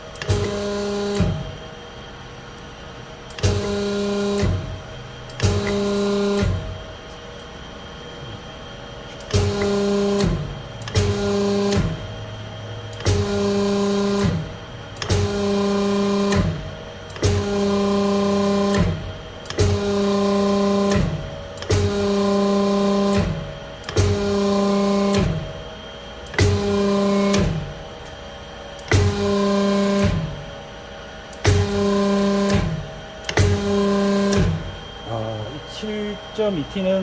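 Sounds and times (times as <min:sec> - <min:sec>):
electric hydraulic pump running: 0:00.0 - 0:37.0.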